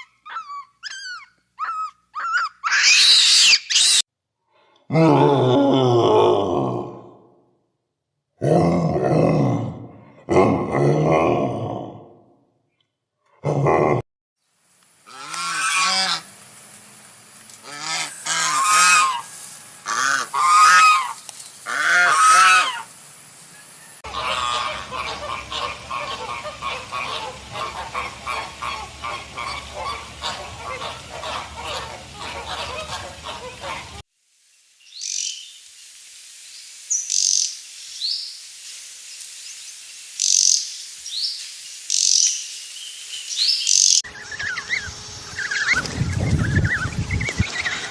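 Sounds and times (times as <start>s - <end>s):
chatter of many animal calls: 0.0s - 4.0s, 17.6s - 22.9s, 24.1s - 34.0s
drawn-out pitched animal calls: 15.1s - 16.3s, 17.6s - 22.9s.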